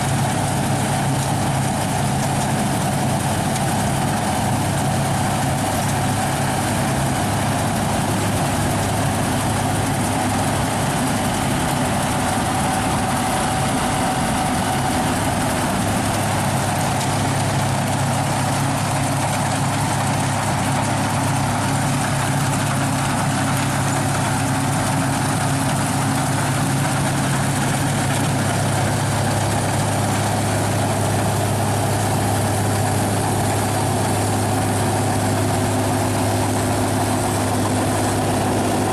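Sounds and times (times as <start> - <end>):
combine harvester droning: 0.0 - 38.9.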